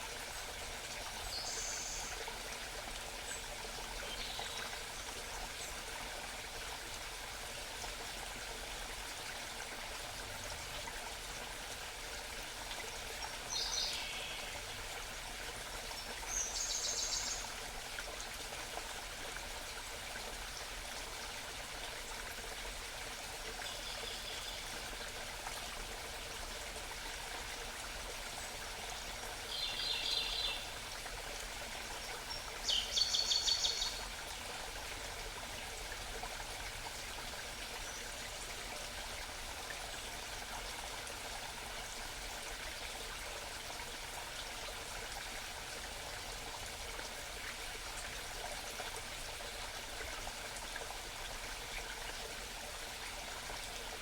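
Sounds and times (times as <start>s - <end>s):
stream babbling: 0.0s - 54.0s
songbird singing high phrases: 32.7s - 34.0s.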